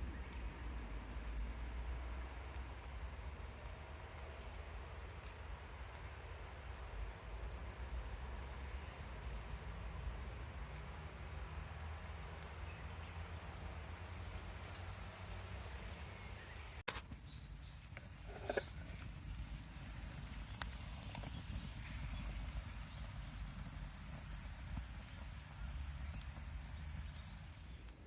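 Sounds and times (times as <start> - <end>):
high-pitched insect buzz: 16.9 - 28.0.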